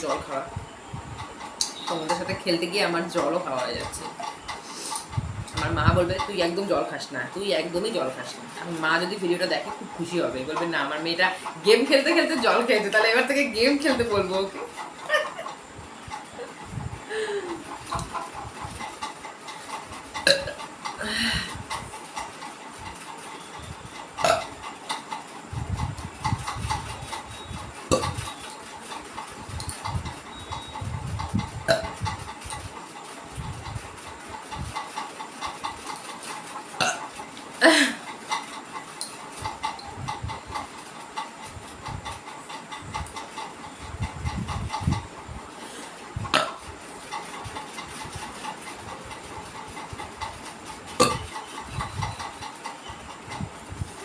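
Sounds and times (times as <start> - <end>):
woman burping: 20.2 - 21.2, 24.2 - 24.5, 36.8 - 38.0, 51.0 - 51.3.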